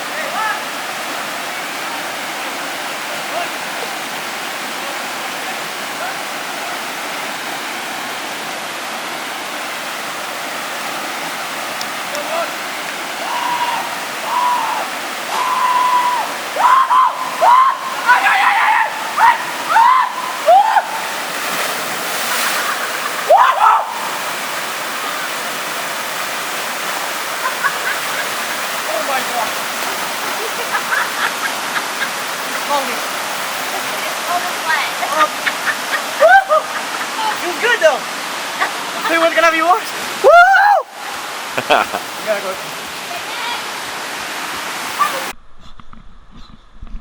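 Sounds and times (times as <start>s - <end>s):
waterfall rushing over rock: 0.0s - 45.4s
person shouting: 13.2s - 20.9s, 23.3s - 24.0s, 40.2s - 40.9s.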